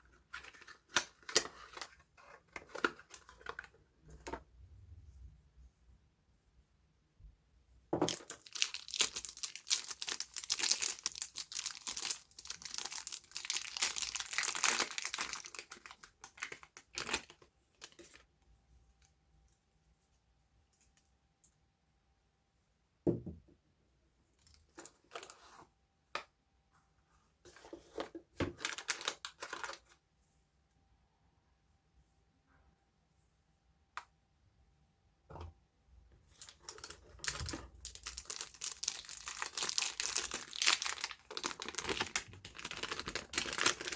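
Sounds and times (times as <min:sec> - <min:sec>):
wrapper crinkling and tearing: 0:08.1 - 0:18.2, 0:28.6 - 0:29.9, 0:36.3 - 0:43.9
thump: 0:23.1 - 0:23.4.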